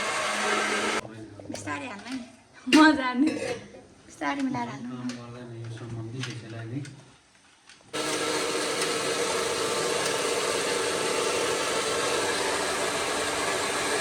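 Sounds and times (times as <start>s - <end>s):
steam hissing: 0.0s - 1.0s, 8.0s - 14.0s.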